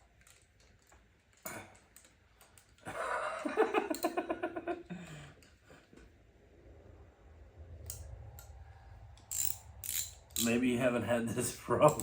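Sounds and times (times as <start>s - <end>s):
person laughing: 2.9s - 5.2s.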